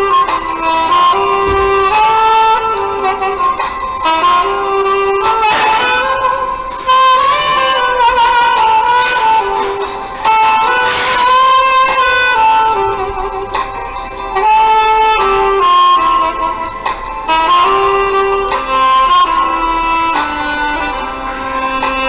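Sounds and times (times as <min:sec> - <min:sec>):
background music with held notes: 0:00.0 - 0:22.0.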